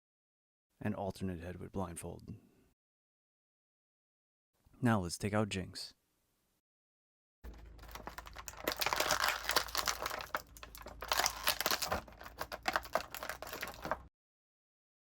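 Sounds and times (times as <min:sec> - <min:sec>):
plastic packaging crinkling: 0:07.5 - 0:14.1.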